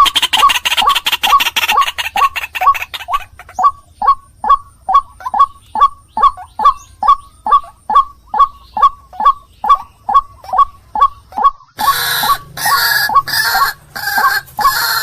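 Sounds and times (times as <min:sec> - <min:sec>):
waterhen calling: 0:00.0 - 0:15.0.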